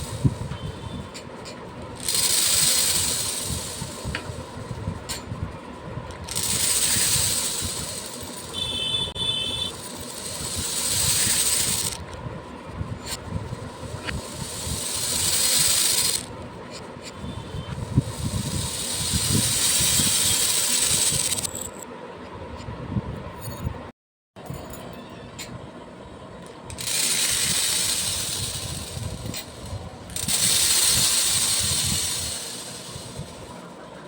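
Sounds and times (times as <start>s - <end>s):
beads pouring: 0.0s - 0.4s, 2.0s - 4.7s, 6.2s - 12.1s, 13.0s - 16.3s, 18.0s - 21.7s, 26.8s - 33.5s
single beads clicking: 1.1s - 4.3s, 6.2s - 12.2s, 13.8s - 17.2s, 26.7s - 33.2s.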